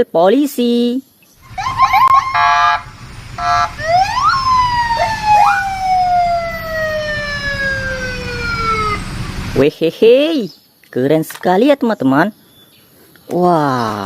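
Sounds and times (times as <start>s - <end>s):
police siren: 1.4s - 9.6s
flat horn-like blasts: 1.7s - 3.9s.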